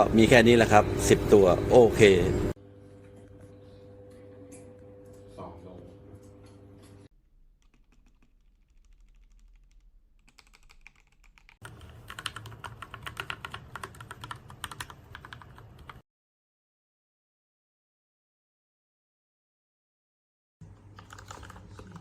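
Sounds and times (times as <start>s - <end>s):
mechanical keyboard typing: 7.6s - 16.0s, 20.9s - 22.0s.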